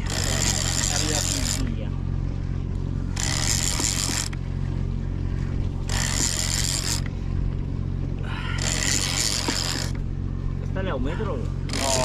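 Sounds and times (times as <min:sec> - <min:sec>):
boat engine humming: 0:00.0 - 0:12.0
scraping zipper-like rushes: 0:03.2 - 0:04.3, 0:08.6 - 0:10.0.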